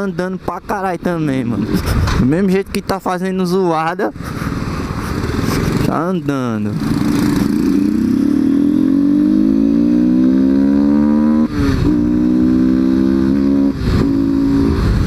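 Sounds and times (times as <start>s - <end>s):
motorcycle engine growling: 4.1s - 15.0s.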